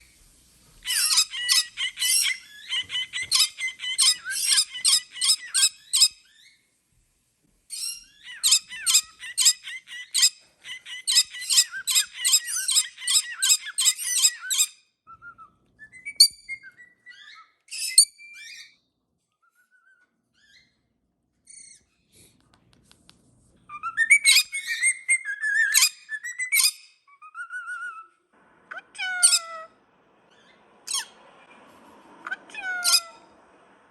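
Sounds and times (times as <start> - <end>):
parrots beeping and chirping: 0.8 - 6.6, 7.7 - 14.8, 15.9 - 18.9, 23.7 - 31.4, 32.2 - 33.6
parrot whistled glides: 0.9 - 6.1.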